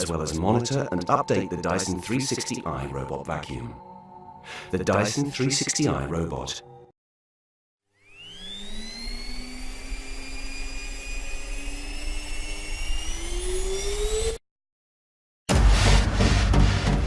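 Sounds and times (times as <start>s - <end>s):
robot vacuum motor whine: 8.0s - 14.4s.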